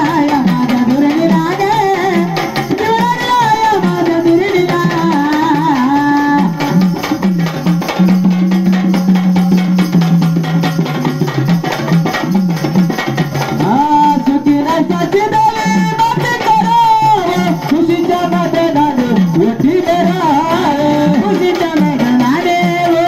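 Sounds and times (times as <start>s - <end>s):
person singing: 0.0s - 6.9s, 13.6s - 23.0s
hand drums fast rhythm: 0.0s - 23.0s.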